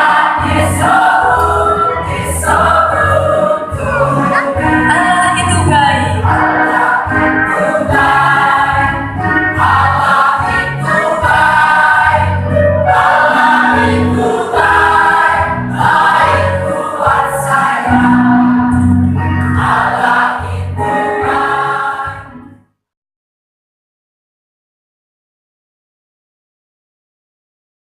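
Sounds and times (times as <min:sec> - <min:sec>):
church choir singing: 0:00.0 - 0:05.0, 0:06.0 - 0:22.6.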